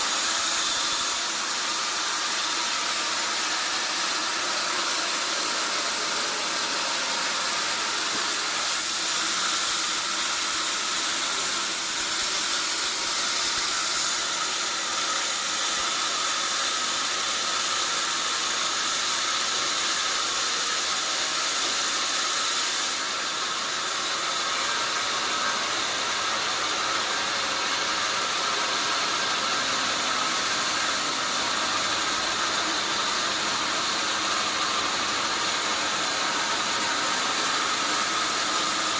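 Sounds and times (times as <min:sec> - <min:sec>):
sawmill machinery hissing: 0:00.0 - 0:38.9.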